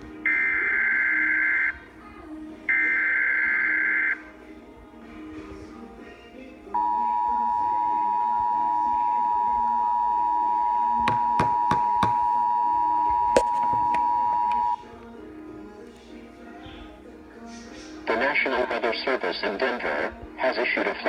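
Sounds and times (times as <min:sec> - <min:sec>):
two-tone alert signal: 0:00.3 - 0:01.8, 0:02.7 - 0:04.2, 0:06.8 - 0:14.8.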